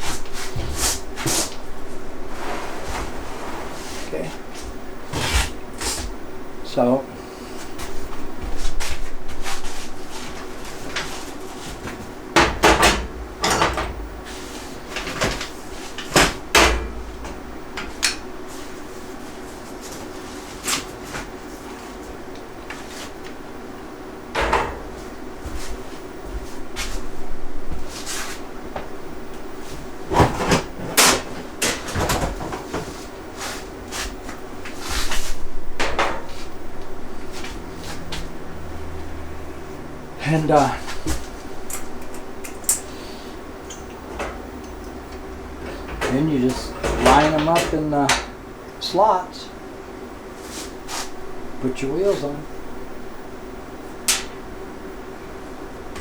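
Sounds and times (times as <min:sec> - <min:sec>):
parts knocking and clattering: 0:11.8 - 0:14.1, 0:45.6 - 0:48.4.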